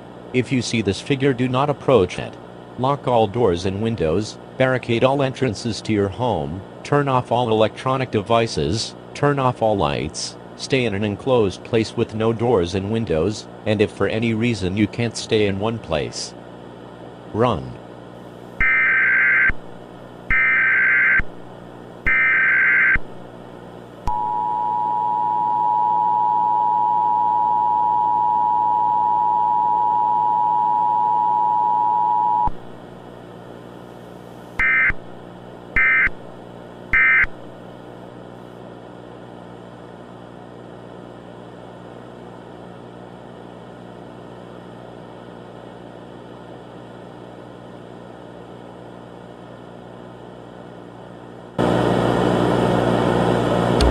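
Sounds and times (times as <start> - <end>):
faint steady hum: 0.0 - 53.9
chirping data bursts: 18.6 - 19.6, 20.3 - 21.3, 22.1 - 23.1, 34.6 - 35.0, 35.8 - 36.2, 37.0 - 37.4
two-tone attention signal: 20.3 - 21.2, 22.1 - 23.0, 24.1 - 32.5, 35.8 - 36.1.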